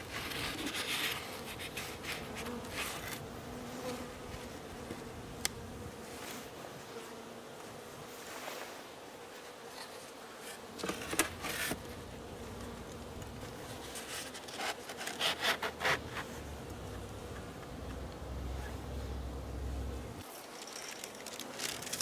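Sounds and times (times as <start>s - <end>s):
rubbing and scraping: 0.0s - 3.2s, 9.7s - 12.0s, 13.4s - 16.6s
honeybees buzzing: 0.0s - 22.0s.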